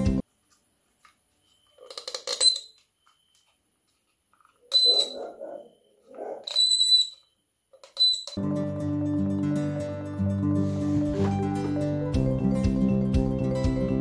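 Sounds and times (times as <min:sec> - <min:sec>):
high-pitched squeaks: 0:01.4 - 0:03.4, 0:04.6 - 0:08.4.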